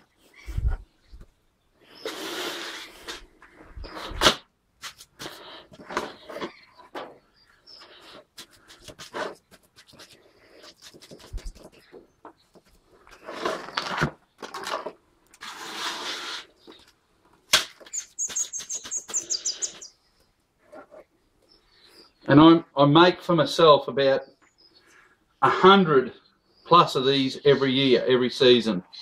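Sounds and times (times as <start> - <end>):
gritty scraping and rustling: 2.0 - 19.4
small bird chirping: 6.2 - 8.8, 17.8 - 20.4, 21.4 - 22.3.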